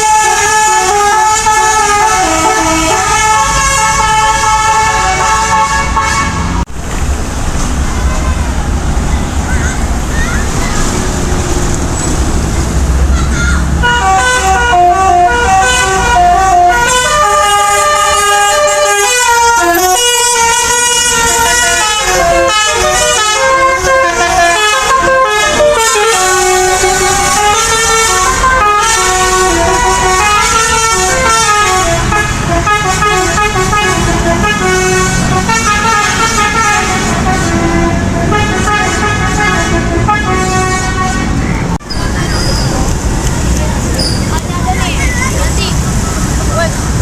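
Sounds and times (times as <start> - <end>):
multi-tone air horn tune: 0.0 - 6.6, 13.8 - 41.4
bus engine low rumble: 0.0 - 47.0.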